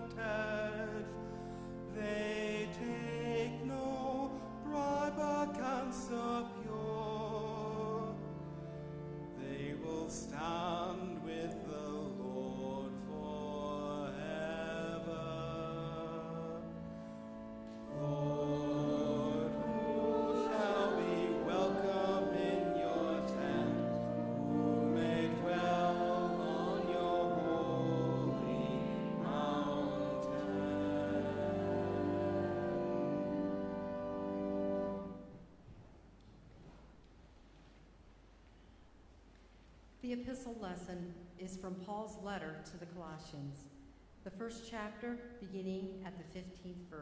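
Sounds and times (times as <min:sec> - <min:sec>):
voices singing church music: 0:00.0 - 0:35.4.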